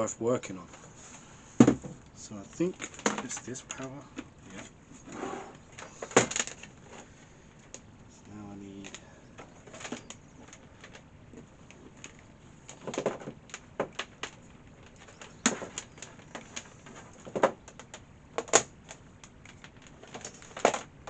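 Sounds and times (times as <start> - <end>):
plastic parts clicking and knocking: 1.6 - 4.6, 5.8 - 6.7, 8.8 - 21.0.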